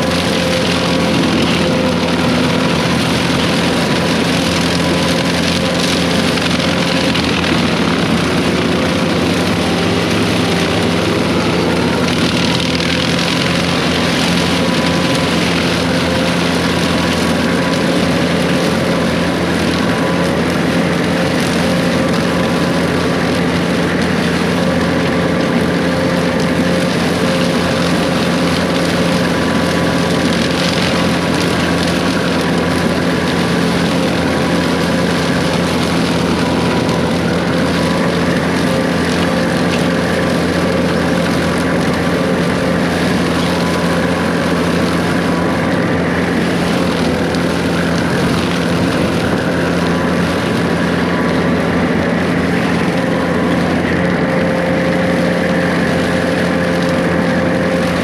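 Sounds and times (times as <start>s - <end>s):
diesel engine drone: 0.0s - 58.0s.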